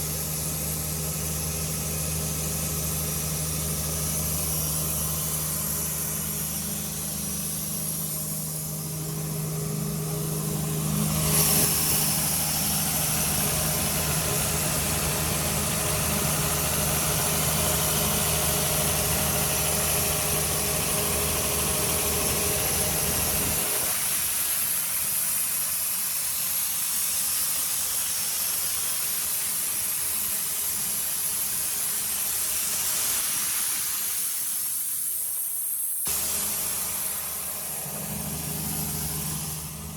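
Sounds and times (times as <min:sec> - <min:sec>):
diesel engine idling: 0:00.5 - 0:23.8, 0:36.1 - 0:39.9
rushing air hiss: 0:02.2 - 0:39.9.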